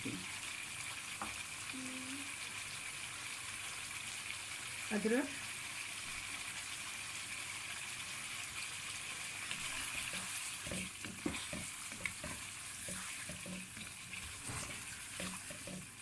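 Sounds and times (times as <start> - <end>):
food sizzling in oil: 0.0 - 16.0
spoon scraping a pan: 9.5 - 16.0.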